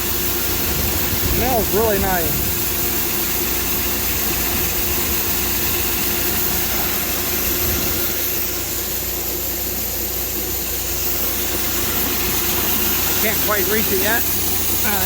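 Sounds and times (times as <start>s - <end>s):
rushing hiss: 0.0s - 15.0s
tractor engine idling: 0.0s - 15.0s.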